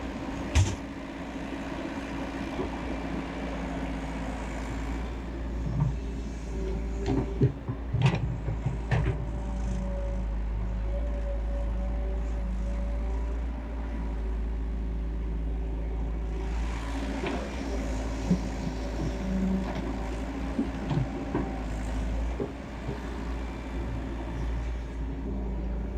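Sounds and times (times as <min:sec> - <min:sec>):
excavator diesel engine running: 0:00.0 - 0:25.9
digging knocks and clatter: 0:17.1 - 0:23.5.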